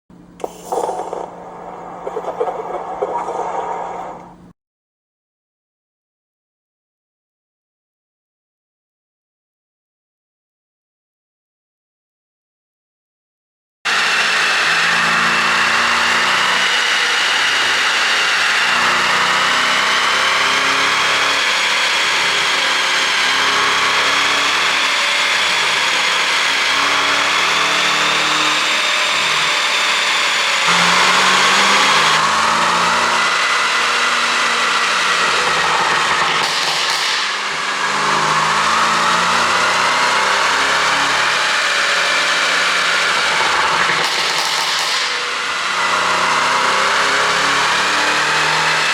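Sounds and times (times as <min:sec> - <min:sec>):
car engine running: 0:00.2 - 0:04.5, 0:13.9 - 0:44.0.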